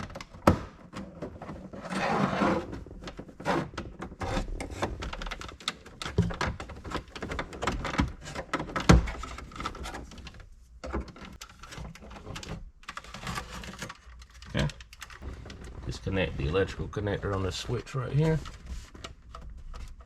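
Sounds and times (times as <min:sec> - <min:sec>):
plastic trim clicks and creaks: 0:03.0 - 0:15.7.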